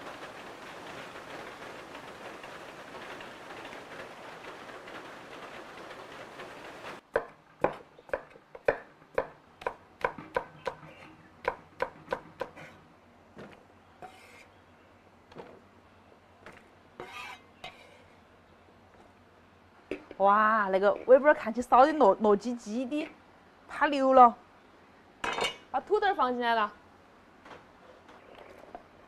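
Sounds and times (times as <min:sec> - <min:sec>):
steady hiss: 0:00.0 - 0:07.0.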